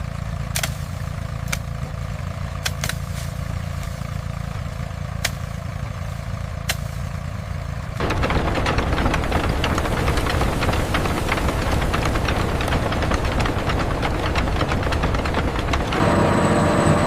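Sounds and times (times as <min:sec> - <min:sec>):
machinery low rumble: 0:00.0 - 0:17.0
dense crackling clatter: 0:06.8 - 0:16.9.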